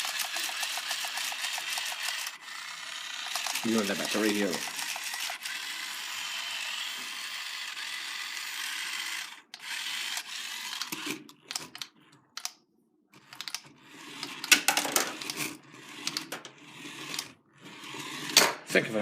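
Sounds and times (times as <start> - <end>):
toy car motor whirring: 0.0 - 12.5, 13.2 - 18.5
plastic clicks and rattles: 10.8 - 12.6, 13.2 - 16.5.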